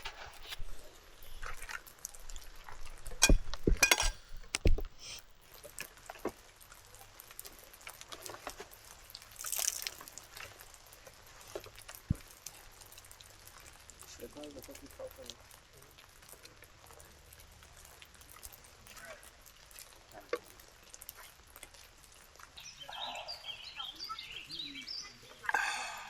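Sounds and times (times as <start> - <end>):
cookware and cups clinking: 3.2 - 4.7
short hiss: 4.0 - 5.3.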